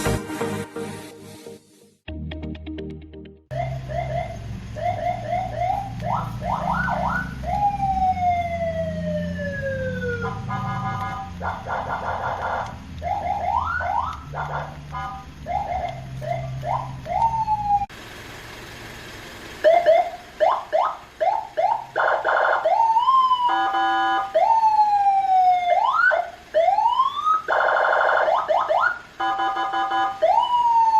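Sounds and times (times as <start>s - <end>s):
electronic siren cycling tones: 3.5s - 17.9s
blaring horn-like chord: 10.2s - 11.4s.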